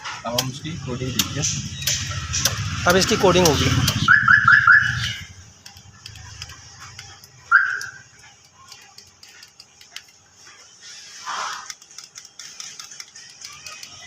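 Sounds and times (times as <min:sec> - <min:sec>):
car alarm siren chirping: 0:01.6 - 0:05.4, 0:07.4 - 0:08.2.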